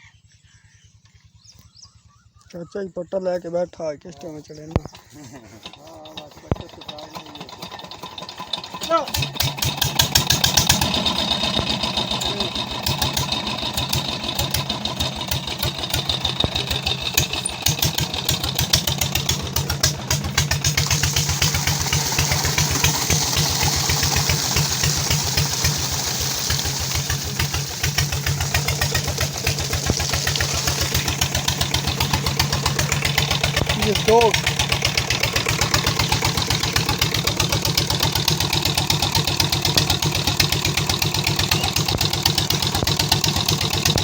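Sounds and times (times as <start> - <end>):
diesel engine running: 4.2 - 44.0
hiss: 20.6 - 31.5.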